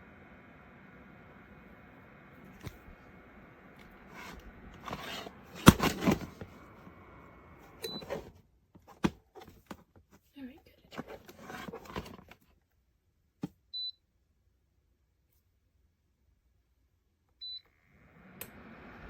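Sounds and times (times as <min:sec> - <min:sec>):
heater fan hum: 0:00.0 - 0:08.4, 0:17.4 - 0:19.0.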